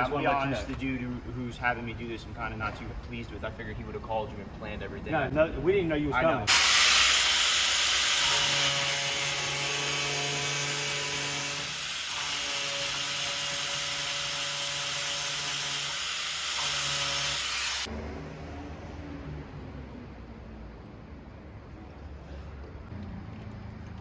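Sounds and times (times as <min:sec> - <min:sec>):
power tool cutting steel: 0:06.5 - 0:17.9.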